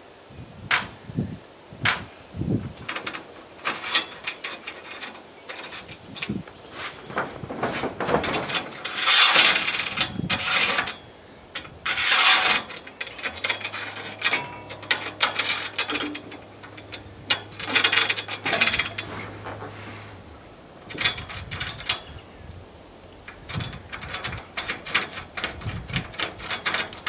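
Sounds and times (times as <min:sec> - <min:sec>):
low steady hum: 0:00.0 - 0:27.0
mechanical ratcheting and rasping: 0:11.6 - 0:19.1, 0:23.3 - 0:27.0.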